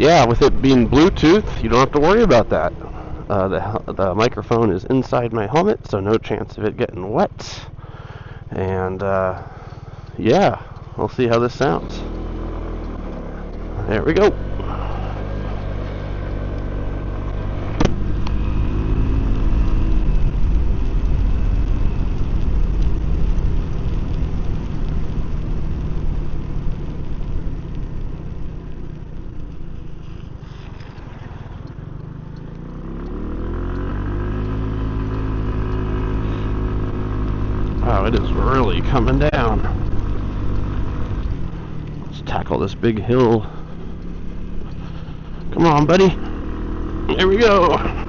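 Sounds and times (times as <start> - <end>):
scooter engine and exhaust: 0.0 - 48.0
sharp knock: 17.7 - 18.1.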